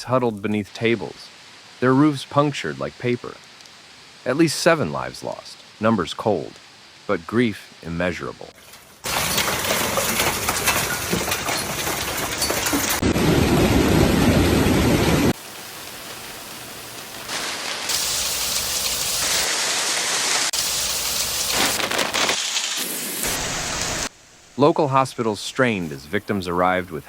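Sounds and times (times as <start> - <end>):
hail and heavy rain pounding: 9.0 - 24.1.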